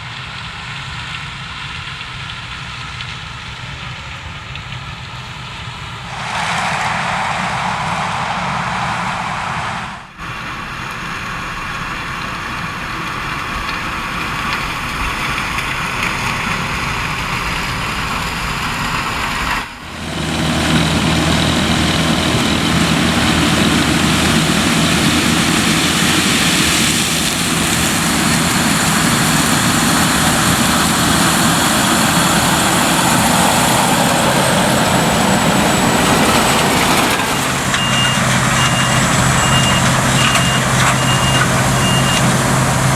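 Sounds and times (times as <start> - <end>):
combine harvester droning: 19.9 - 42.9.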